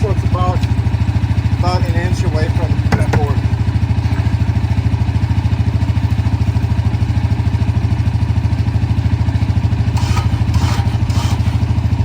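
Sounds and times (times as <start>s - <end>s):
engine running with low pulse: 0.0s - 12.0s
short clatters: 9.9s - 12.0s.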